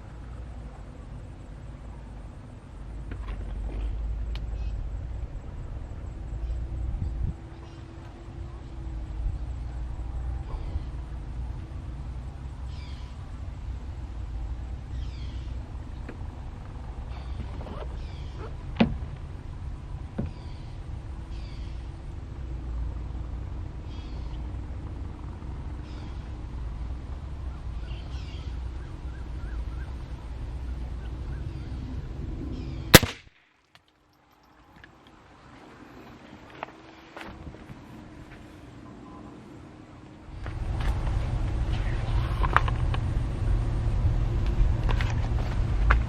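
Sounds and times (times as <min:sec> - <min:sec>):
bird chirping: 0:12.6 - 0:13.3, 0:14.9 - 0:16.1, 0:17.1 - 0:18.5, 0:27.4 - 0:33.1
rifle shot: 0:32.9 - 0:33.6.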